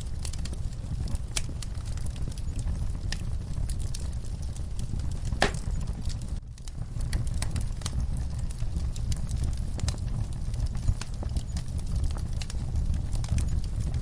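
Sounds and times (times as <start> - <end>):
fire crackling and popping: 0.0 - 14.0.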